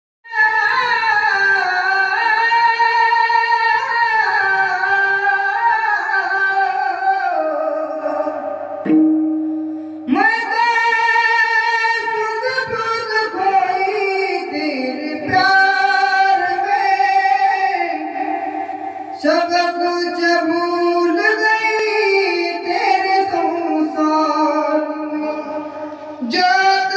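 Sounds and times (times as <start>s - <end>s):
high solo voice singing: 0.2s - 9.2s, 10.0s - 26.9s
held instrumental tone: 8.8s - 10.1s.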